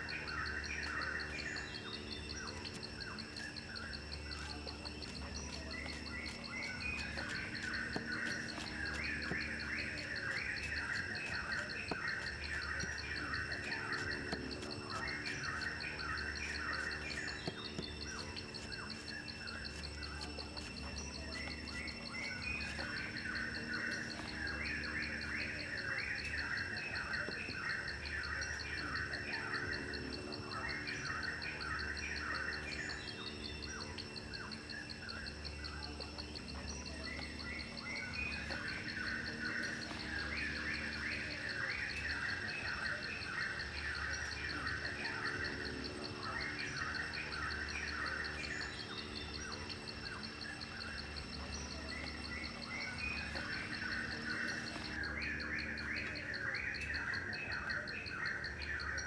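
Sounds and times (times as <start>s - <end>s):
pulsing insect trill: 0.0s - 59.0s
small birds chirping: 0.0s - 59.0s.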